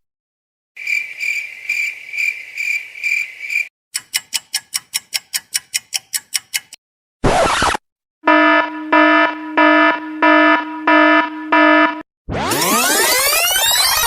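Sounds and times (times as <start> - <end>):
cricket chirping: 0.8 - 3.7
fast sharp ticks: 4.0 - 6.8.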